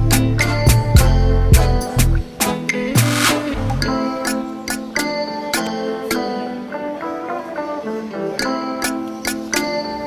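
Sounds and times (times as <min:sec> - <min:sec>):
bass line: 0:00.0 - 0:04.2
music with steady beat: 0:00.0 - 0:06.7.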